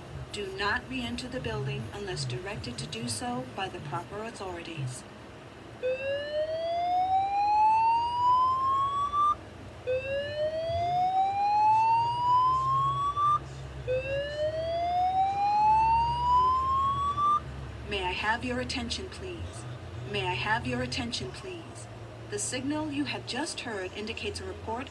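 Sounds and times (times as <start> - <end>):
slow whoop evacuation tone: 5.8 - 17.4.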